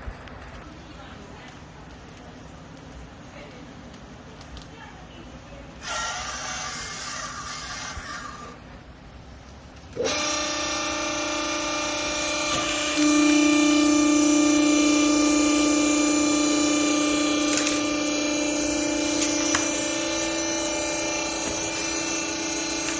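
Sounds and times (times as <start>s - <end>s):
hydraulic power unit whining: 5.8s - 8.8s, 9.9s - 22.9s.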